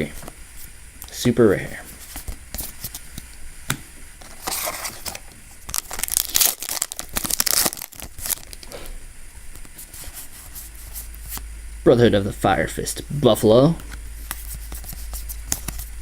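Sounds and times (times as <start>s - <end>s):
foil wrapper tearing and crinkling: 4.3s - 8.6s.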